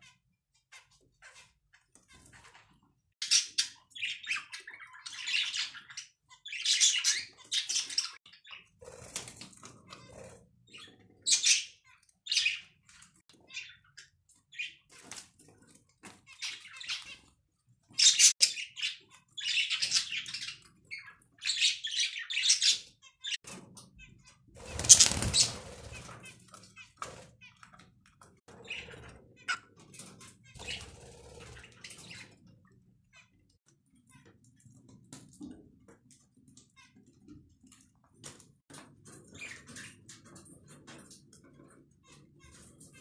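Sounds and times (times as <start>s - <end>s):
budgerigars chirping: 3.2s - 8.7s, 24.7s - 26.2s
birds fluttering: 8.7s - 10.5s, 24.5s - 27.5s, 29.9s - 32.4s.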